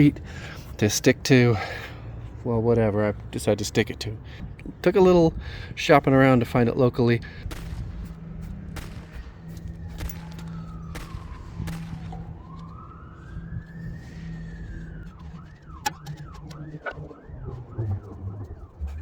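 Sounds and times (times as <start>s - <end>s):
emergency vehicle siren: 7.2s - 19.0s
steady low hum: 7.2s - 19.0s.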